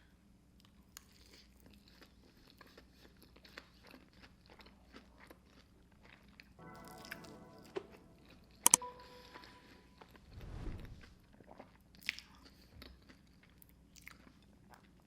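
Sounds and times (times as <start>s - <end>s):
chewing and crunching: 0.6s - 6.6s, 11.3s - 15.0s.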